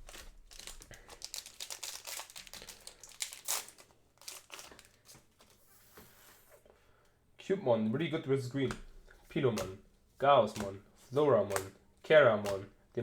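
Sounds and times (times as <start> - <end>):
plastic wrapper crinkling: 0.0 - 5.6.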